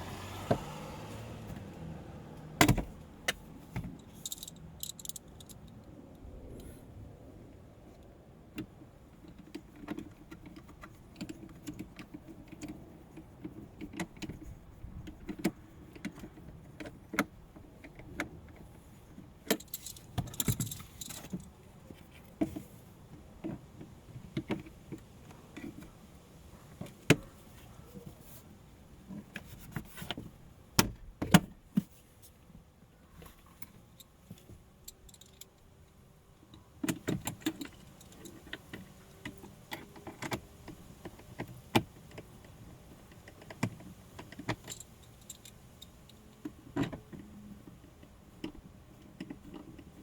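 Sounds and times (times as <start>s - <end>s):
small hard parts clicking and rattling: 2.6s - 5.9s, 9.1s - 22.7s, 33.3s - 47.2s.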